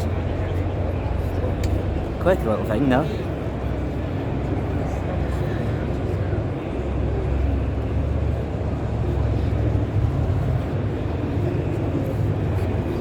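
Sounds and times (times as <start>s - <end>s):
busy indoor hall rumble: 0.0s - 13.0s.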